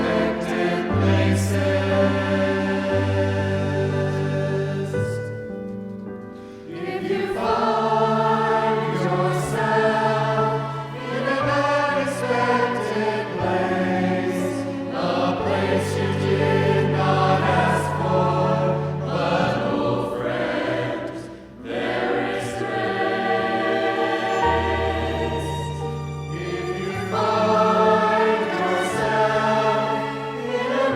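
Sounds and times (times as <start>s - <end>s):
worship song with singing voices: 0.0s - 30.9s.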